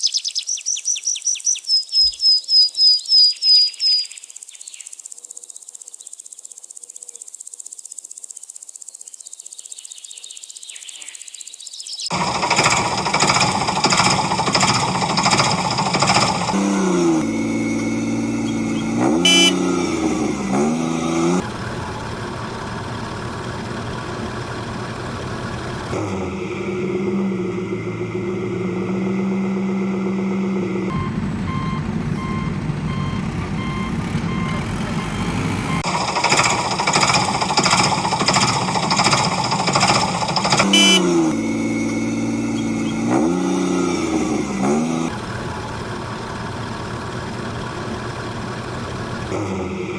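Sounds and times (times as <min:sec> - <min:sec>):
heavy machine engine revving: 0:12.1 - 0:49.9
reversing beeper: 0:16.6 - 0:20.1, 0:30.9 - 0:35.9, 0:40.7 - 0:43.1.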